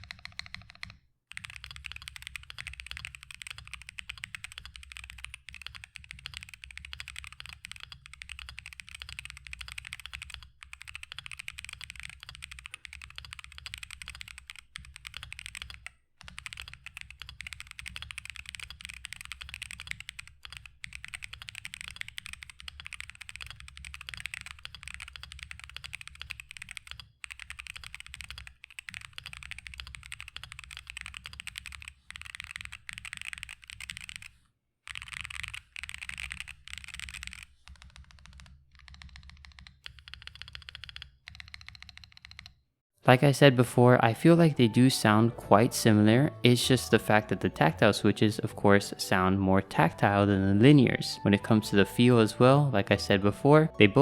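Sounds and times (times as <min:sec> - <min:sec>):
mechanical keyboard typing: 0:00.0 - 0:42.6.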